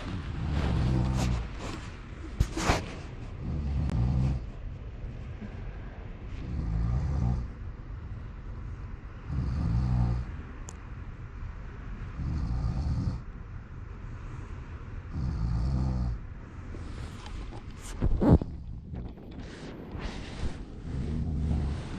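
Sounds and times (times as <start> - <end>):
low rattling snores: 0.0 - 4.5, 6.4 - 7.6, 9.2 - 10.4, 12.2 - 13.3, 15.1 - 16.2, 16.8 - 21.9.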